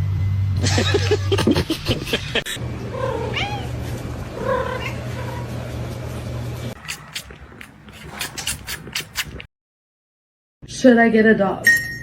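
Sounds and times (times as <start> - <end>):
cat meowing: 3.0 - 3.7.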